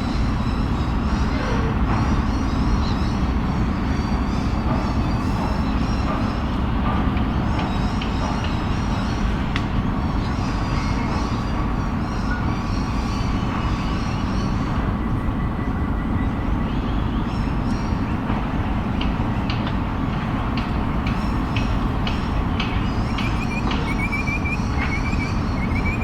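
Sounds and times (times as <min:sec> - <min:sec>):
low rumble of traffic: 0:00.0 - 0:26.0
faint high chirps: 0:22.8 - 0:26.0.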